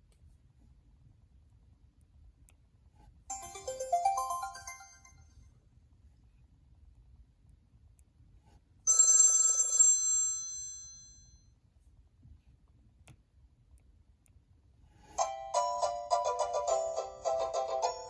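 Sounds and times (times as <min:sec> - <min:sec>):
bell-like phone ringtone: 0:03.3 - 0:05.3, 0:08.9 - 0:11.3, 0:15.2 - 0:18.0.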